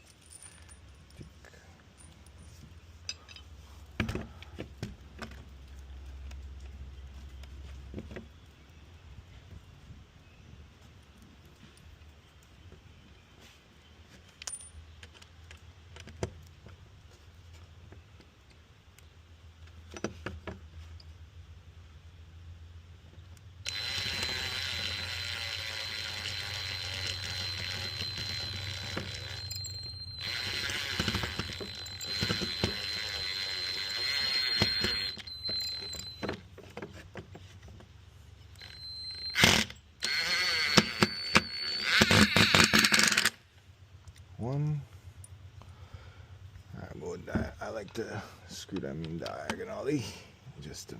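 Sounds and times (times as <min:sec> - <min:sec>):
power drill driving screws: 0:23.7 - 0:36.4, 0:38.5 - 0:43.4.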